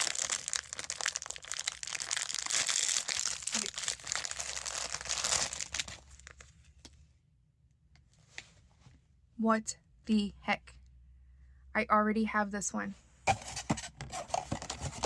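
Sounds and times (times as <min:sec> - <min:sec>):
plastic packaging crinkling and tearing: 0:00.0 - 0:06.5.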